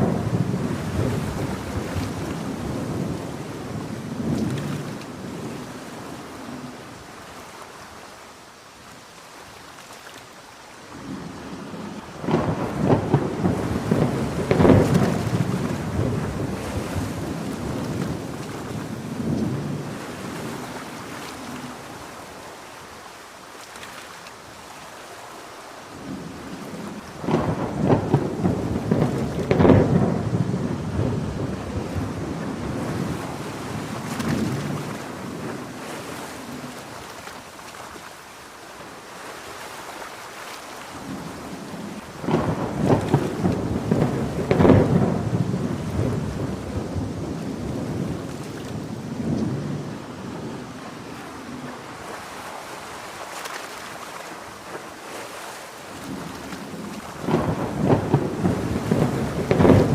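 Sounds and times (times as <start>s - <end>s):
thunder rolling: 0.0s - 6.2s, 11.0s - 21.1s, 26.0s - 35.9s, 41.0s - 52.1s, 56.1s - 59.9s
heavy rain: 0.0s - 59.9s.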